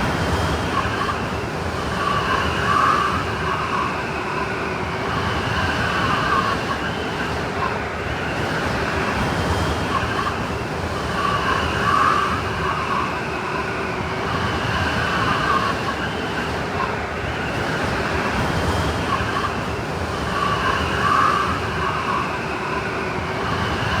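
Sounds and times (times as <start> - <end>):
snowstorm wind whistling: 0.0 - 24.0.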